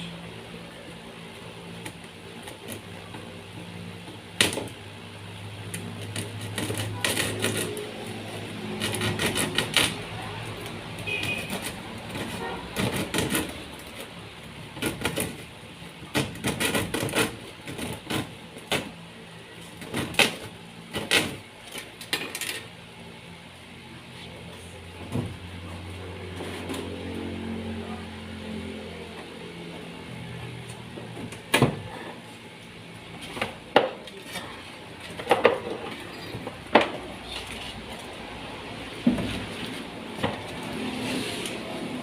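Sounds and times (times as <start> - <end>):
low mechanical hum: 0.0 - 42.0
knocks and clatter of carpentry: 33.2 - 34.4, 35.0 - 37.1.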